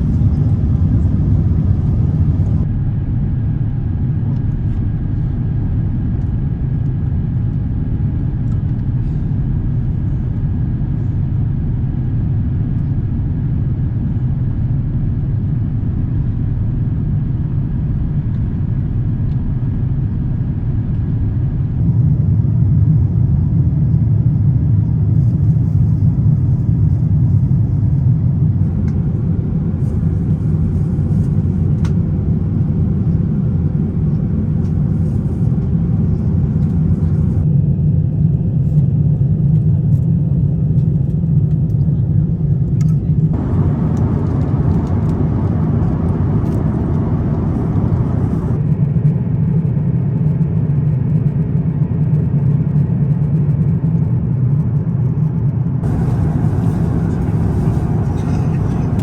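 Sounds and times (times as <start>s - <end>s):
aircraft cabin rumble: 0.0s - 59.0s
cabin hiss: 55.9s - 59.0s.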